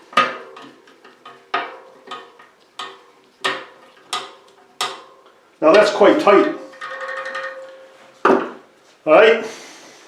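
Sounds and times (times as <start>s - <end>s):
metallic clinks on bicycle spokes: 0.1s - 5.4s, 6.5s - 8.0s.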